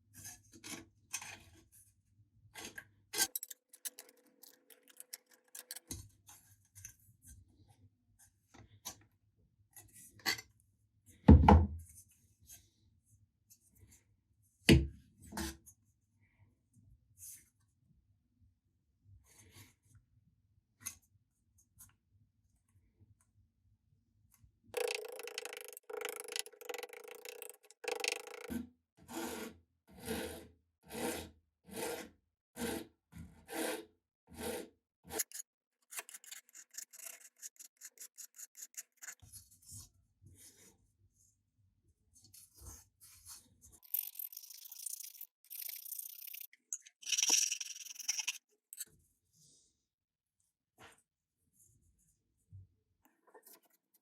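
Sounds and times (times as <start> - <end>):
abrasive rubbing on metal blade: 36.0 - 39.2.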